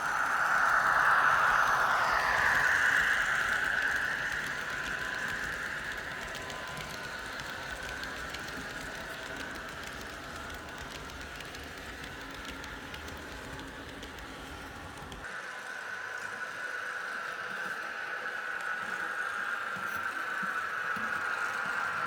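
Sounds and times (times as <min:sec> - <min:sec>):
model train wheels clattering: 0:00.0 - 0:15.3.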